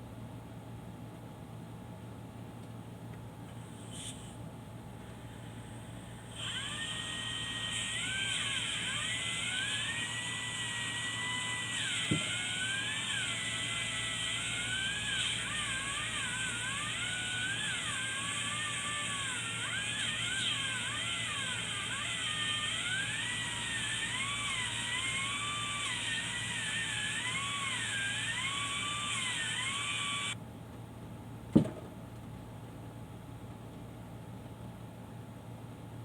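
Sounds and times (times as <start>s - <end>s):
angle grinder whining: 6.1s - 30.4s.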